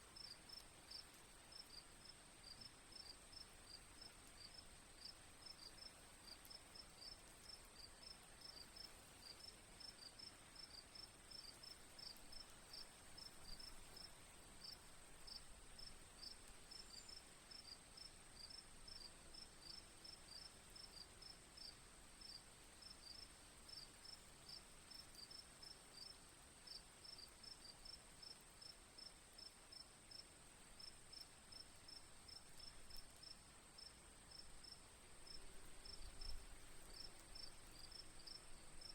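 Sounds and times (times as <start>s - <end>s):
soft steady hiss: 0.0s - 38.9s
insect chirping: 7.0s - 22.4s, 26.0s - 38.9s.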